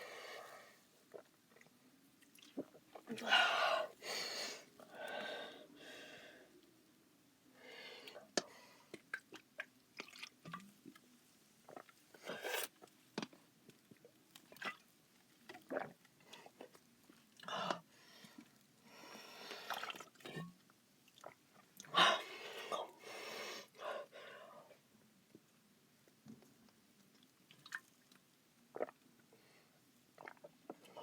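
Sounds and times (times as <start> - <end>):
person sipping and swallowing: 11.7 - 12.9, 15.5 - 16.8, 28.7 - 29.0, 30.2 - 31.0.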